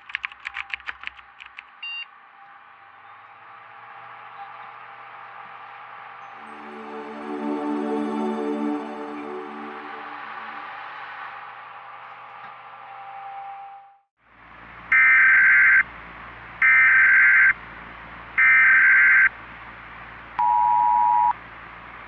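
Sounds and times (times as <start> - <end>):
soft ambient music: 6.2 - 11.4.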